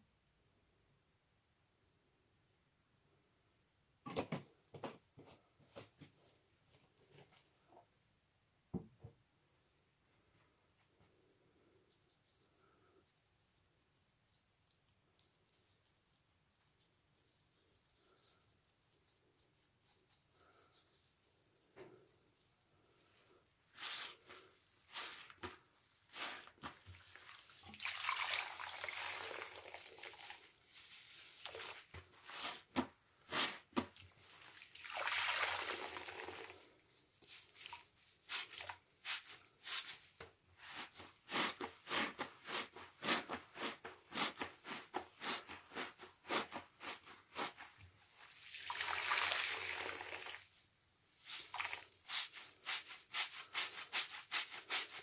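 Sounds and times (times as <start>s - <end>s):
wet sponge squelches: 14.3s - 55.0s.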